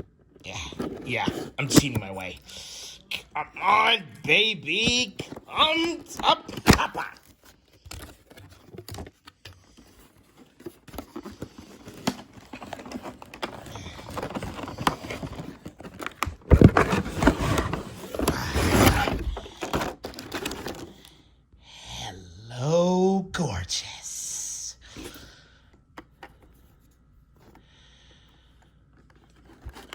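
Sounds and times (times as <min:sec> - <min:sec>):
cardboard and plastic packaging rustling: 0:00.0 - 0:02.6, 0:04.7 - 0:21.2, 0:28.4 - 0:29.9.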